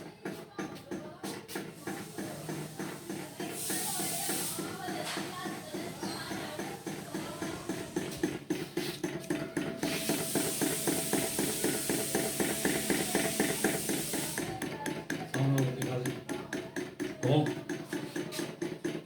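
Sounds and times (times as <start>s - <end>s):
table fan mechanical beat: 0.0s - 19.0s
steady hiss: 3.2s - 4.8s, 9.9s - 14.4s.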